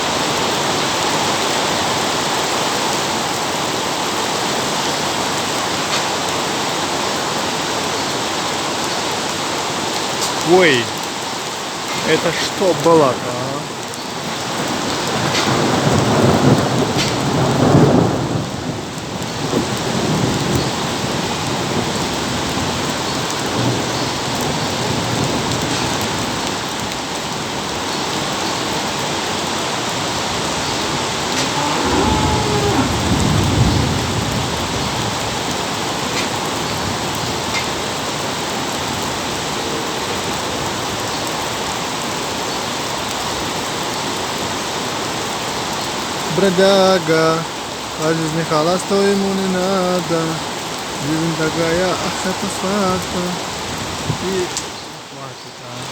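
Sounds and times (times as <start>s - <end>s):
heavy rain pouring: 0.0s - 55.9s
thunder rumbling: 14.7s - 23.8s, 30.3s - 37.4s.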